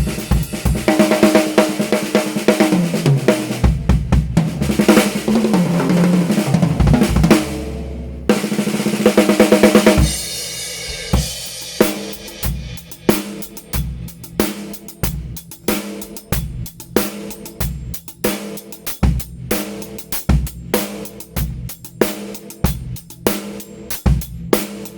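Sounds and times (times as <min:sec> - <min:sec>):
drum kit playing: 0:00.0 - 0:24.9
snare drum rolls: 0:00.8 - 0:10.1.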